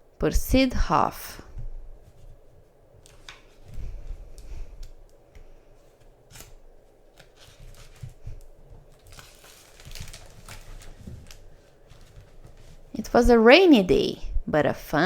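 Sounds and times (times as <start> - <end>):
paper pages rustling: 2.0 - 4.5, 5.6 - 13.0.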